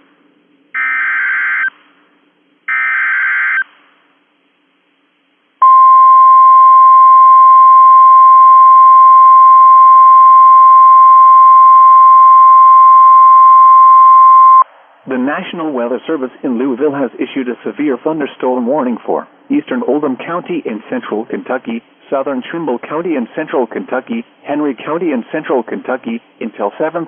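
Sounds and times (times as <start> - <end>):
loud steady alarm tone: 0.8 - 1.7, 2.7 - 3.7.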